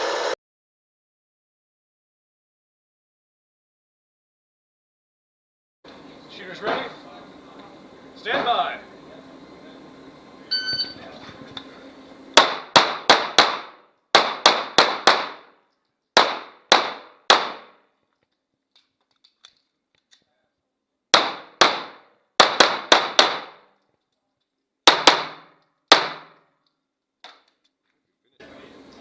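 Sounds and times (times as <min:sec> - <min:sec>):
pistol shots: 0:12.4 - 0:15.5, 0:16.2 - 0:17.8, 0:21.1 - 0:23.7, 0:24.8 - 0:26.4.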